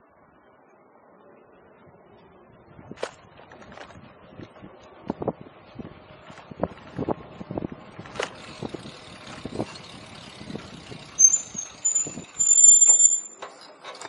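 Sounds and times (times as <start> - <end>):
bicycle rattling over road: 2.6 - 14.0
bicycle brakes squealing: 8.8 - 14.0.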